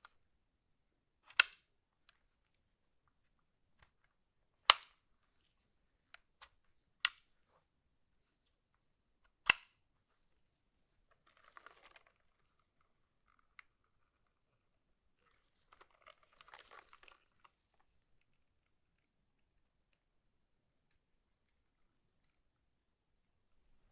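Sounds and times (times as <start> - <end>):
keyboard and packaging clicks: 1.3 - 1.7, 9.3 - 9.8
soft rustle: 5.2 - 9.0, 10.0 - 19.1.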